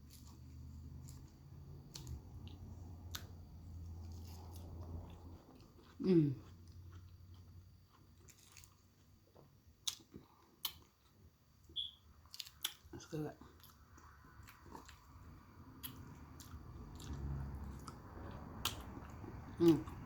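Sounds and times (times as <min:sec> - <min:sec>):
chewing salad: 0:00.0 - 0:20.0
person humming mm: 0:06.0 - 0:06.4.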